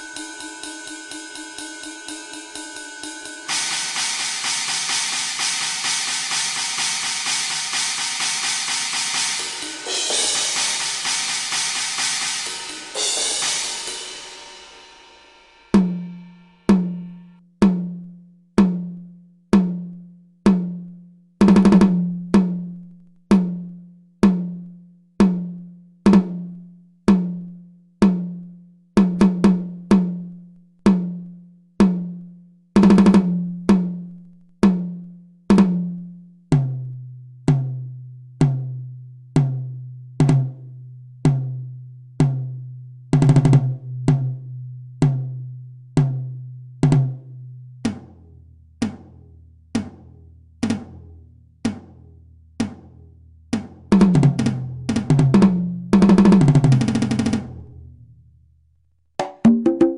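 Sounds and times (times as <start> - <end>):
drum hits ringing: 0.0 - 14.8, 59.2 - 59.9
cymbal crashing: 0.0 - 16.7
lower-pitched drum: 0.0 - 19.9, 53.6 - 57.9.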